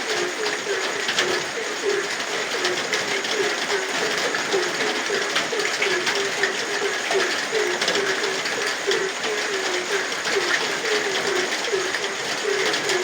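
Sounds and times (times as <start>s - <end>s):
frogs calling: 0.0s - 13.0s
steady rain pattering: 0.0s - 13.0s.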